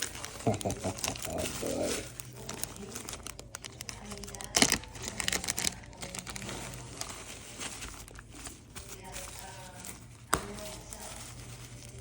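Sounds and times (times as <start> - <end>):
plastic packaging crinkling and tearing: 0.0 - 12.0.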